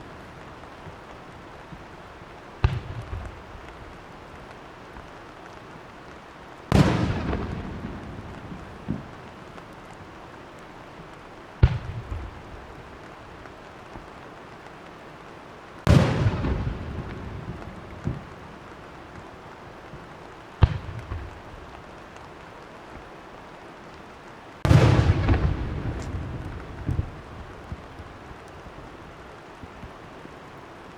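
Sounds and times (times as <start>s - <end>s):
firework crackle: 0.0s - 30.9s
firework shells bursting: 24.6s - 28.9s.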